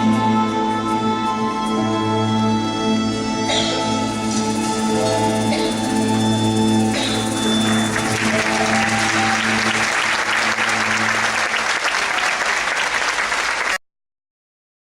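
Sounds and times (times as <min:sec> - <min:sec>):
music with held notes: 0:00.0 - 0:11.8
audience applause: 0:07.0 - 0:13.8.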